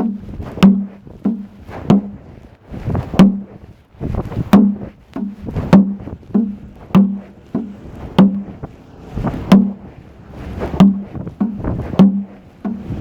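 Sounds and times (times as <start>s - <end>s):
sharp knocks with hollow ring: 0.0s - 2.2s, 3.0s - 3.6s, 4.4s - 8.7s, 9.3s - 9.8s, 10.7s - 13.0s.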